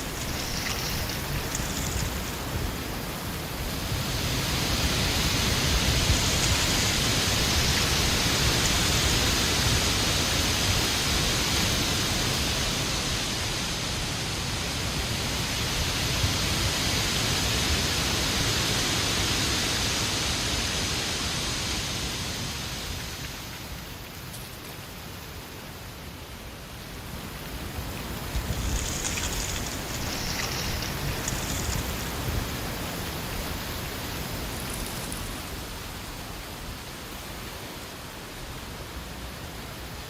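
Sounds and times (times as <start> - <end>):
wind buffeting microphone: 0.0 - 13.0, 27.1 - 35.6
gusting wind: 0.0 - 25.2, 26.3 - 40.0.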